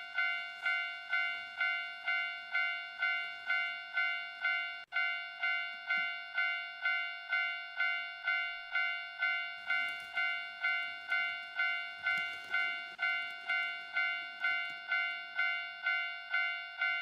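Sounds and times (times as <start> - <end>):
model train rattling on track: 0.0 - 4.8, 6.8 - 17.0
level-crossing bell ding: 0.0 - 17.0.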